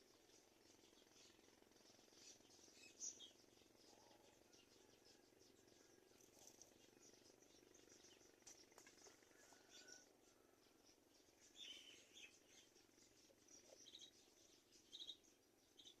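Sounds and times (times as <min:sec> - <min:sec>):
high-pitched background hiss: 0:00.0 - 0:08.2
faint bird chirps: 0:00.0 - 0:16.0.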